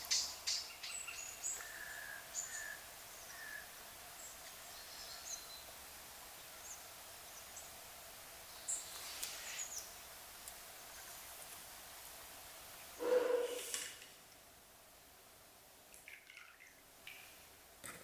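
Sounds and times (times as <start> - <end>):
small birds chirping faintly: 0.0 - 13.7
steady background hiss: 0.0 - 18.0.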